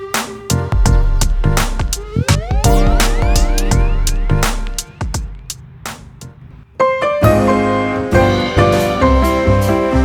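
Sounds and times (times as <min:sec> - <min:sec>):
drum hits: 0:00.2 - 0:06.5
heavy bass: 0:00.5 - 0:06.6
rising synth line: 0:00.6 - 0:06.4.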